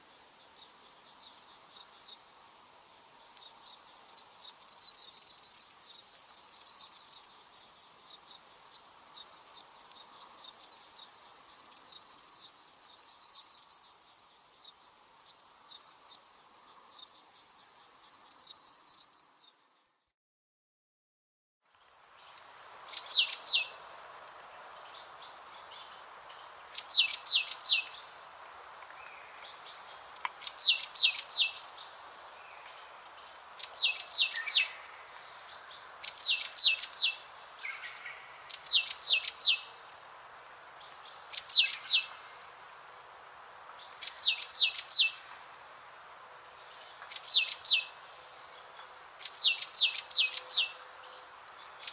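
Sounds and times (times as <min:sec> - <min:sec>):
faint steady background noise: 0:00.0 - 0:20.1, 0:21.6 - 0:51.9
songbirds singing: 0:00.0 - 0:20.1, 0:21.7 - 0:51.9.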